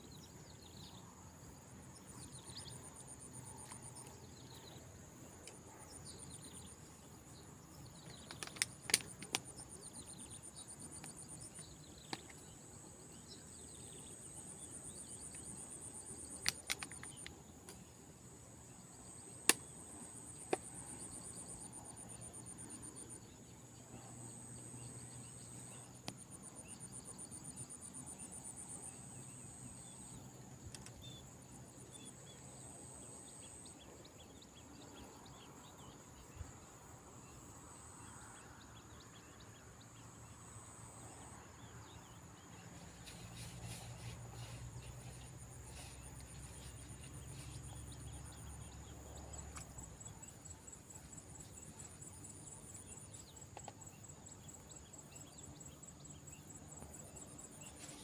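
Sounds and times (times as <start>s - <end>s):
insects chirring: 0.1s - 58.0s
high rapid cricket trills: 1.0s - 17.5s, 34.4s - 58.0s
sharp clicks: 8.1s - 9.6s, 16.3s - 17.8s.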